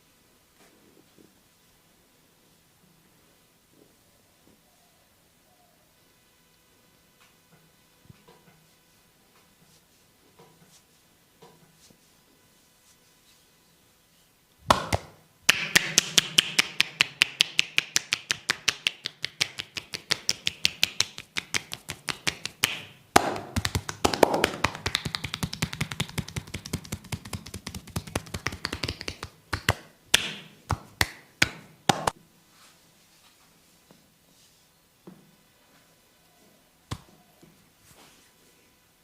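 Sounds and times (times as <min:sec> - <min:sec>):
hands tapping and patting on body: 0:14.7 - 0:32.2, 0:36.9 - 0:37.1
sharp slaps on skin: 0:14.7 - 0:32.2.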